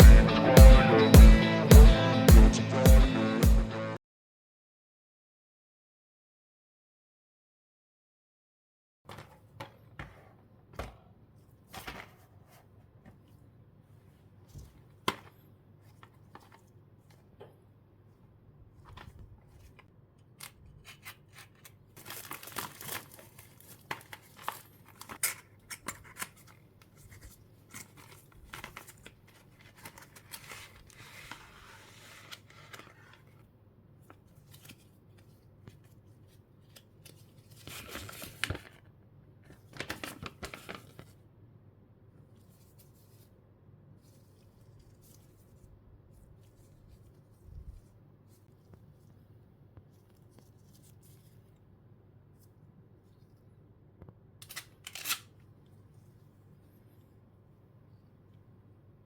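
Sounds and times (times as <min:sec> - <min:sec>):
packaging cutting and tearing: 0:20.9 - 0:26.6, 0:54.4 - 0:55.3.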